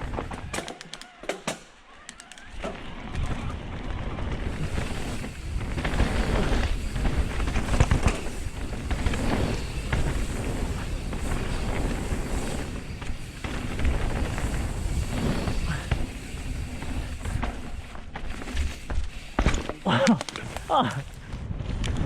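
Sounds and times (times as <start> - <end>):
bike rumbling and rattling on dirt: 0.0 - 22.0
wind rushing over microphone: 3.1 - 17.8.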